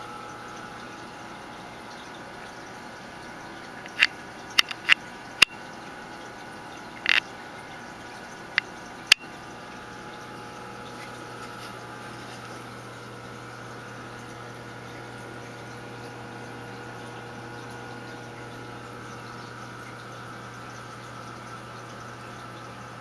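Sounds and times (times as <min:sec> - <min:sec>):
aquarium filter humming: 0:00.0 - 0:23.0
water trickling: 0:00.0 - 0:23.0
sharp click: 0:03.9 - 0:05.6, 0:07.0 - 0:07.2.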